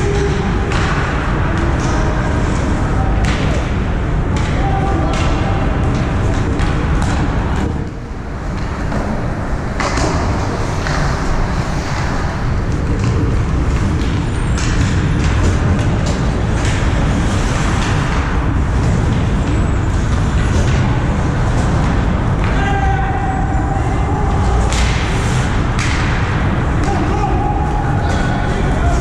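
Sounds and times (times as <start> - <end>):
skates scraping ice: 7.6 - 22.1.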